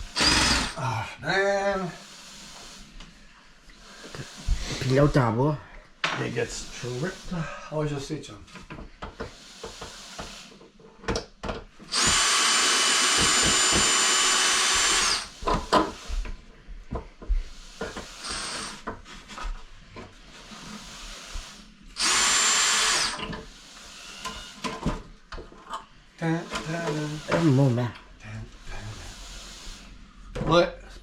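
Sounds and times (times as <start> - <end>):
power drill whining: 0.0 - 0.9, 6.2 - 7.4, 11.8 - 16.2, 17.8 - 18.9, 20.9 - 24.8, 26.3 - 27.9.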